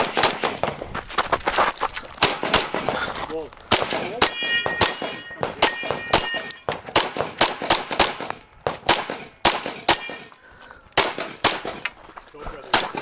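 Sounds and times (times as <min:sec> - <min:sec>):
pistol shots: 0:00.0 - 0:00.8, 0:02.2 - 0:03.0, 0:03.7 - 0:10.3, 0:11.0 - 0:11.9, 0:12.6 - 0:13.0
steel targets ringing: 0:04.2 - 0:06.8, 0:09.9 - 0:10.4.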